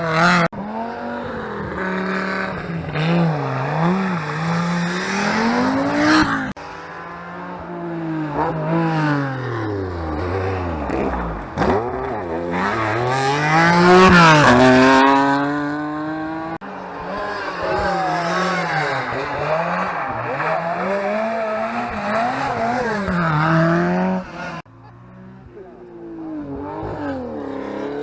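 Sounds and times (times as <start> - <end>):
rally car engine revving: 0.0 - 28.0.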